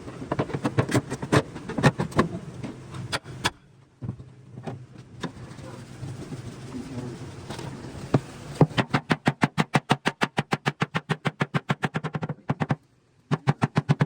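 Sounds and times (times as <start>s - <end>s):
hammer tapping on sheet metal: 8.7s - 14.0s.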